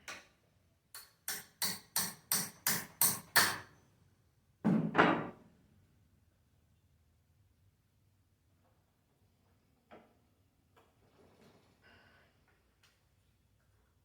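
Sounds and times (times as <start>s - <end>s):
hammer striking metal: 1.0s - 3.7s.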